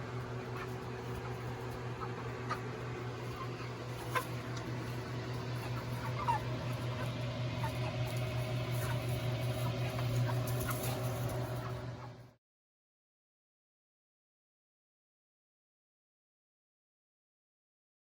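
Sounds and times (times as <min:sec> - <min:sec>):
chickens peeping and clucking: 0:00.0 - 0:12.4
steady low hum: 0:00.0 - 0:12.4.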